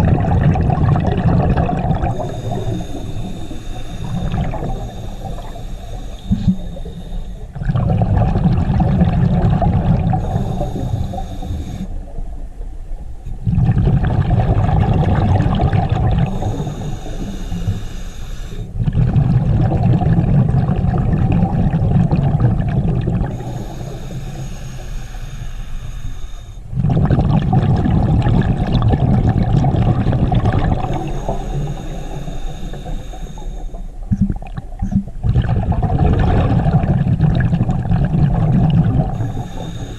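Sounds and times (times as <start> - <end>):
exhaled bubbles burbling: 0.0 - 12.3, 13.4 - 17.7, 18.7 - 24.1, 26.7 - 39.7
regulator inhale hiss: 1.9 - 7.6, 10.0 - 12.0, 16.2 - 18.8, 23.1 - 26.7, 30.6 - 34.1, 39.0 - 39.9.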